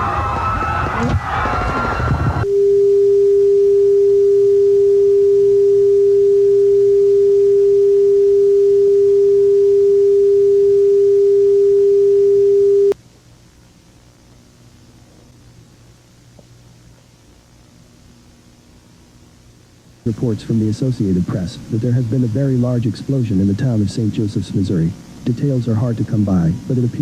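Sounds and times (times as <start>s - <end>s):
low electronic test tone: 2.4s - 13.0s
faint static hiss: 2.4s - 27.0s.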